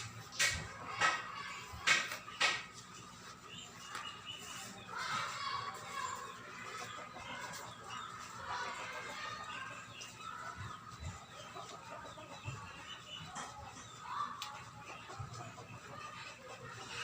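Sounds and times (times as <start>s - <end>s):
chickens clucking: 0.0s - 17.0s.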